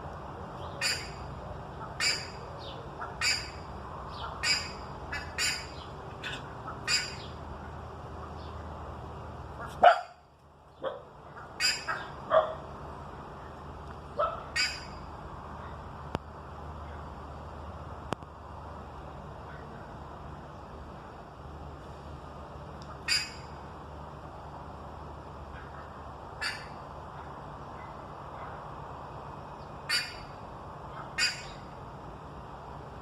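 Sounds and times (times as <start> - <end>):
ibis harsh barking calls: 0.7 - 1.2, 1.8 - 7.4, 10.8 - 12.6, 14.2 - 15.0, 23.0 - 23.5, 25.5 - 28.6, 29.8 - 31.7.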